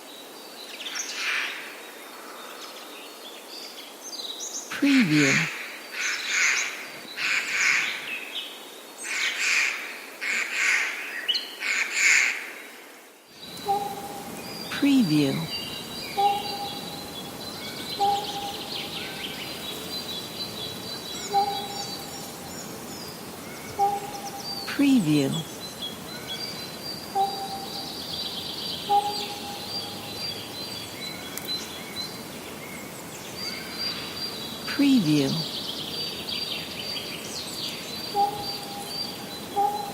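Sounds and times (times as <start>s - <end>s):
songbirds chirping and singing: 13.3s - 39.9s
harsh bird calls: 13.4s - 39.9s.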